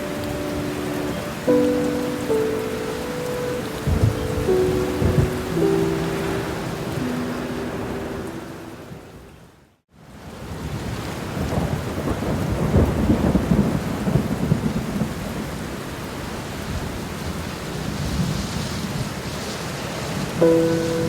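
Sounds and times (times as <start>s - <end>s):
thunder rumbling: 0.0s - 7.4s, 11.4s - 15.6s
steady rain: 0.0s - 21.0s.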